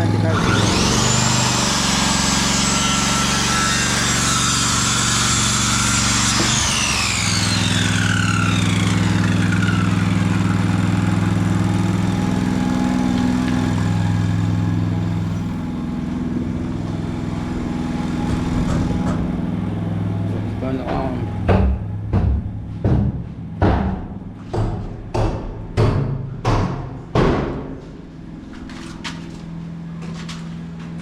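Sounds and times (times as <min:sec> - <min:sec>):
power tool motor whining: 0:00.0 - 0:20.8.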